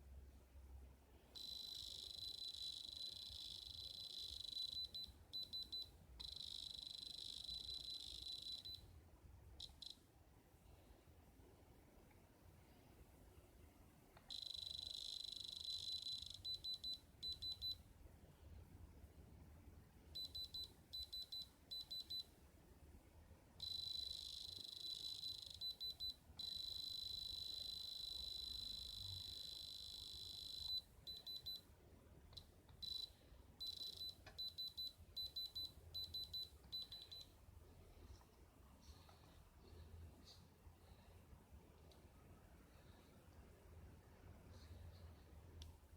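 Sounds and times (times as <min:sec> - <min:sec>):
electronic tester beeping: 0:01.4 - 0:08.9, 0:09.6 - 0:10.0, 0:14.2 - 0:17.8, 0:20.2 - 0:22.3, 0:23.6 - 0:31.7, 0:32.4 - 0:37.4.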